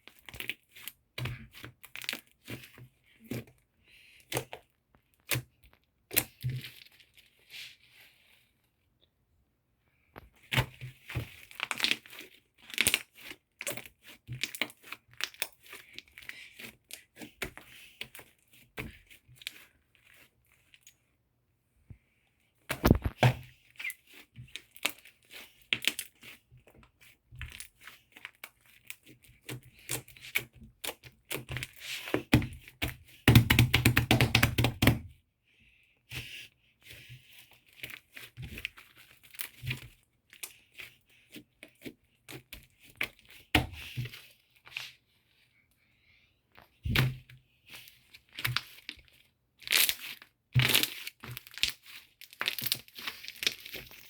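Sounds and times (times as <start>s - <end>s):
crinkling and tearing: 22.7s - 26.4s, 47.8s - 54.0s.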